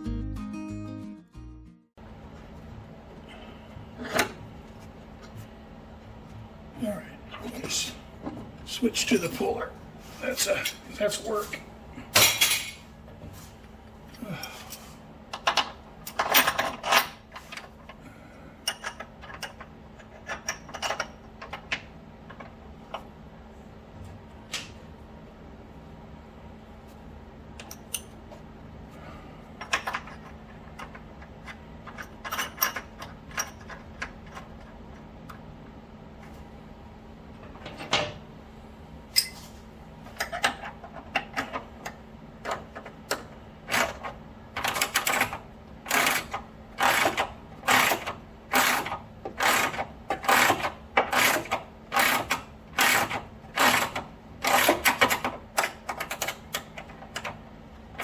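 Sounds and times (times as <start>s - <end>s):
hand ratchet clicking: 44.6s - 56.6s.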